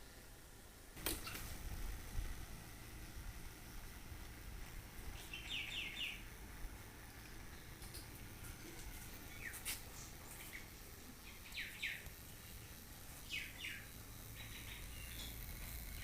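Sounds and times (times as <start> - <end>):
low background rumble: 0.0 - 16.0
faint bird chirping: 5.0 - 16.0.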